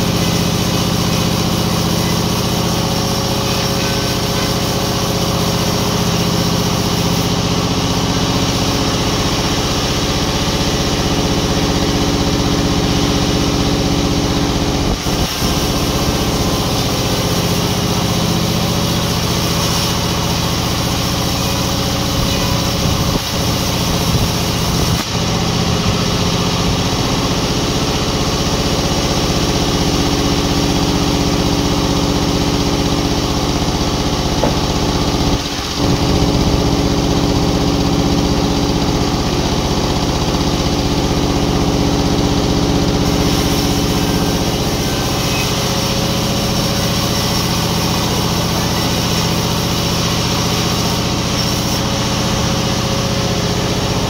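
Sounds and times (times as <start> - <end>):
sawmill engine running: 0.0 - 54.0
brief knocks: 34.4 - 34.7.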